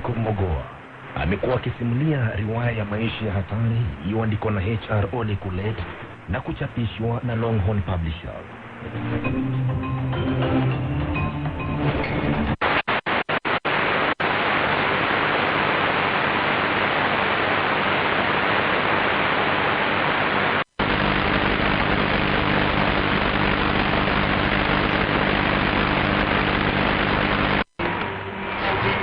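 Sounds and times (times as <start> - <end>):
shortwave radio static hiss: 0.0 - 9.6, 12.5 - 29.0.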